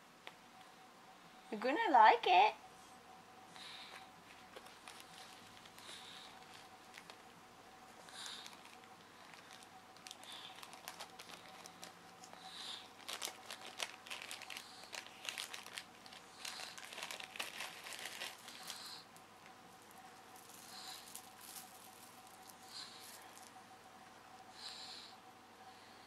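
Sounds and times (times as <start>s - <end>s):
packaging crackling: 4.3s - 7.3s, 8.1s - 19.2s, 19.8s - 23.6s.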